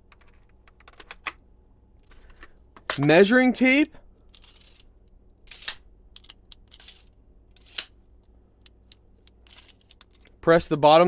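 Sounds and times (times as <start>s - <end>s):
tape measure clicks: 5.5s - 7.9s
tape measure scrapes: 6.8s - 7.9s.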